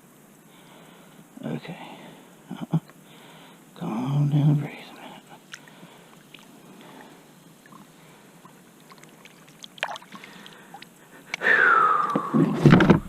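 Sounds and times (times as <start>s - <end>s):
water around a kayak: 5.2s - 11.4s.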